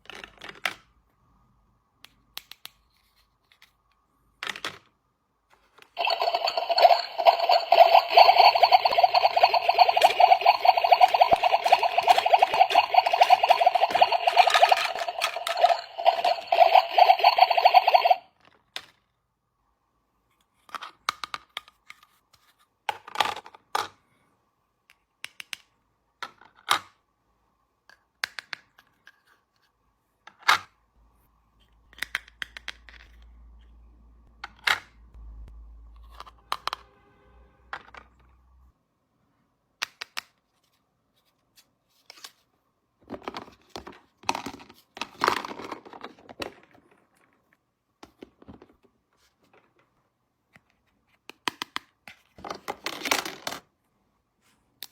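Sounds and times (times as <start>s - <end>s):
toy pieces clicking and tapping: 6.0s - 18.2s.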